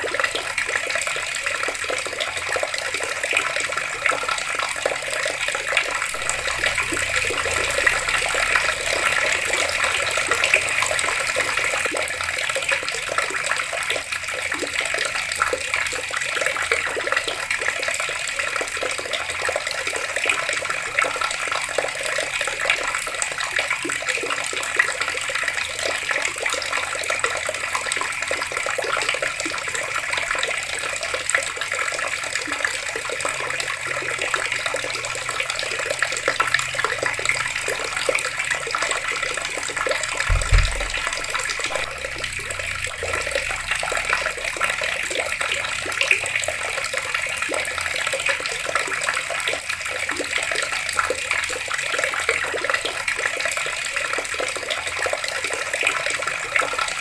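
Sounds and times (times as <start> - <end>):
water running from taps: 0.0 - 57.0
low thump: 40.2 - 43.7.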